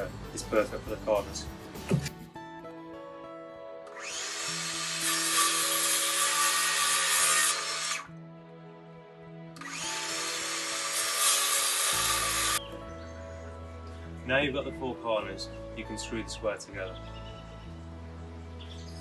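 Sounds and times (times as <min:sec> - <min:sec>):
power tool cutting wood: 0:03.9 - 0:08.2, 0:09.6 - 0:12.7.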